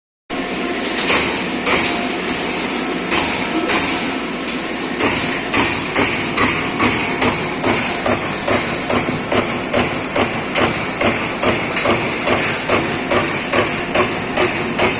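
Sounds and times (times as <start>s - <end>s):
machine running noise: 0.3s - 14.9s
punch press metallic strikes: 5.0s - 14.9s.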